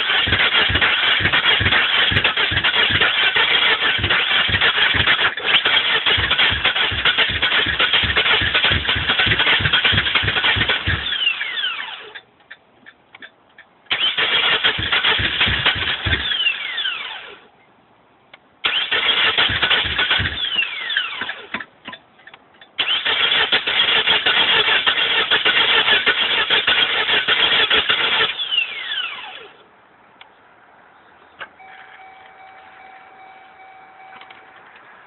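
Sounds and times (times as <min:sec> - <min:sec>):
starter motor cranking engine: 0:00.0 - 0:12.2, 0:13.9 - 0:17.4, 0:18.6 - 0:21.6, 0:22.8 - 0:29.5
starter spinning down whine: 0:00.0 - 0:12.2, 0:13.9 - 0:17.4, 0:18.6 - 0:21.6.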